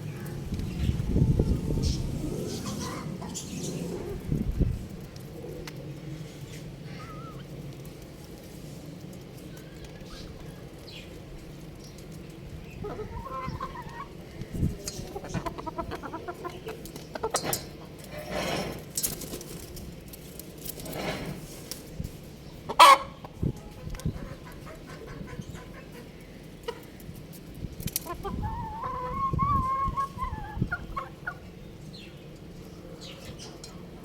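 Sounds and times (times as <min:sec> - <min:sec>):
young rooster clucking and calling: 0:12.7 - 0:17.9, 0:22.7 - 0:26.9, 0:28.0 - 0:31.6.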